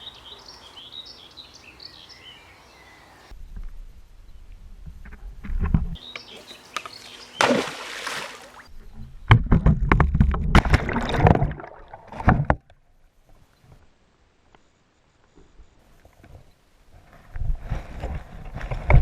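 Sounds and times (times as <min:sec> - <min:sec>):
water sloshing: 0:06.8 - 0:08.7, 0:10.5 - 0:12.6
magnet splashing into water: 0:07.4 - 0:08.7, 0:10.2 - 0:12.5.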